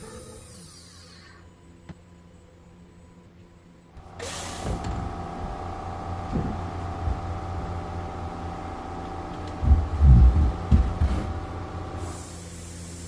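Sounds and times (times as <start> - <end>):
low hum: 0.0 - 12.2
heavy low thumps: 9.6 - 11.1.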